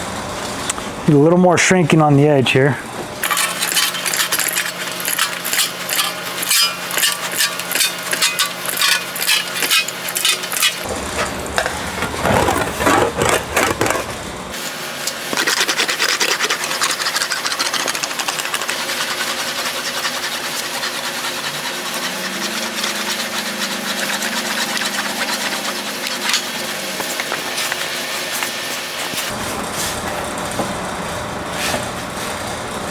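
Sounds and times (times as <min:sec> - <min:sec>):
sheet metal rubbing and scraping: 0:03.2 - 0:14.6.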